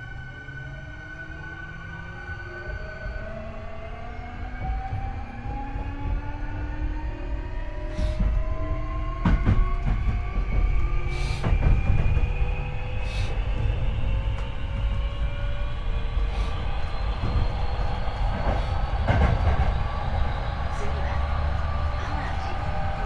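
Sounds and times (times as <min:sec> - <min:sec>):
rumble of wheels on rail: 0:00.0 - 0:23.0
train motors whining: 0:07.8 - 0:23.0.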